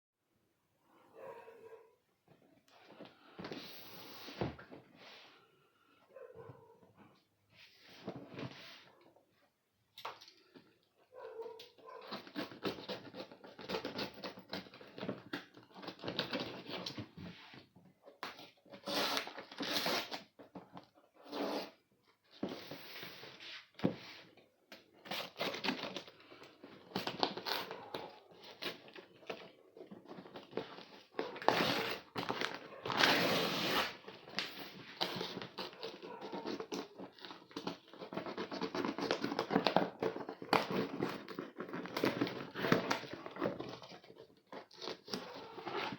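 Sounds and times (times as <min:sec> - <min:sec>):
tape and cardboard tearing: 0:12.0 - 0:17.0, 0:18.2 - 0:21.8, 0:25.0 - 0:45.9.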